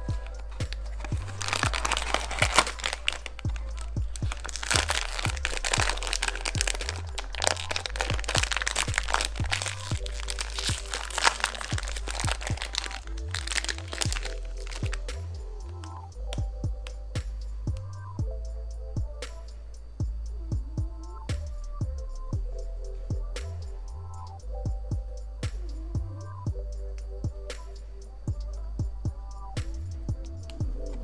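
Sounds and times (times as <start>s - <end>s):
packaging wrapper crinkling: 0.0s - 15.1s
background music with steady beat: 0.0s - 31.0s.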